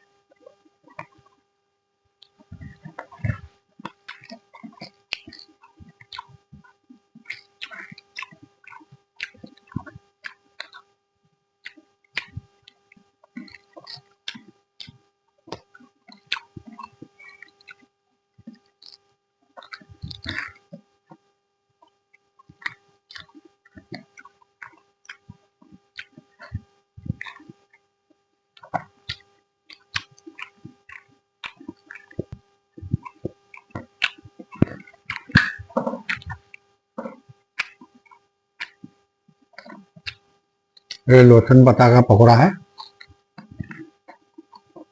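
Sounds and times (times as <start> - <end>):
faint steady hum: 0.0 - 44.9
person chewing food: 2.2 - 10.9, 11.6 - 19.0, 19.6 - 20.8, 22.4 - 27.7, 28.6 - 38.9, 39.5 - 40.2, 42.8 - 44.9
wet mouth smacks: 28.7 - 36.4, 37.1 - 38.9.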